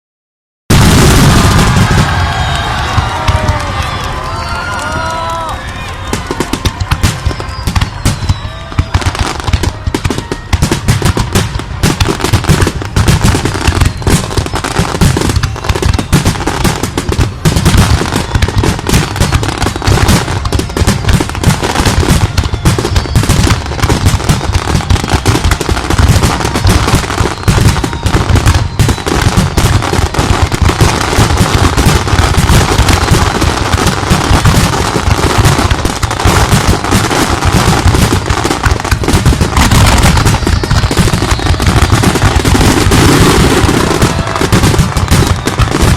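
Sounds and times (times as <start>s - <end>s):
fireworks booming and crackling: 0.7s - 45.9s.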